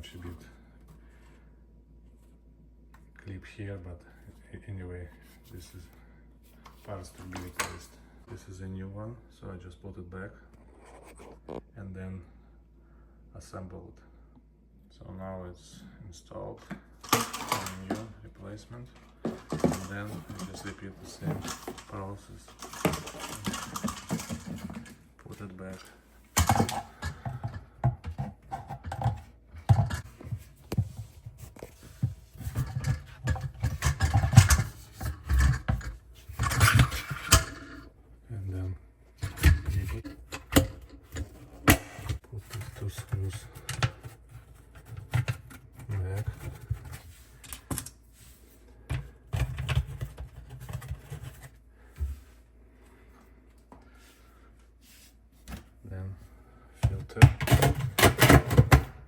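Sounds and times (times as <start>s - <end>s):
plastic parts clicking and scraping: 16.6s - 18.1s, 19.0s - 37.9s, 39.2s - 48.0s, 56.8s - 59.0s.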